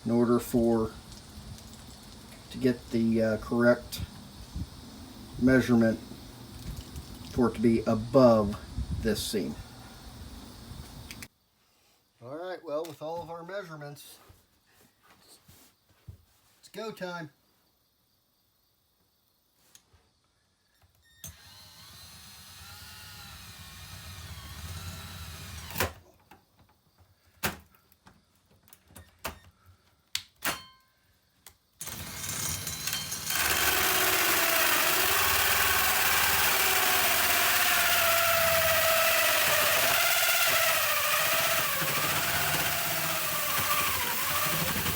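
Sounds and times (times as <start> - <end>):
power drill cutting into metal: 31.8 - 44.9.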